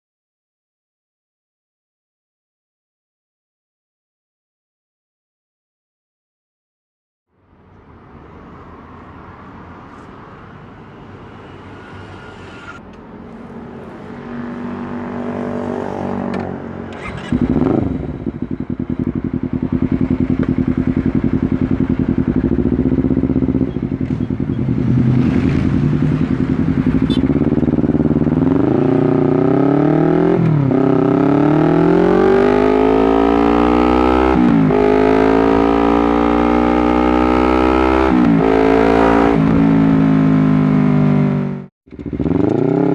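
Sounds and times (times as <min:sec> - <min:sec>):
motorcycle engine revving: 0:14.1 - 0:42.9.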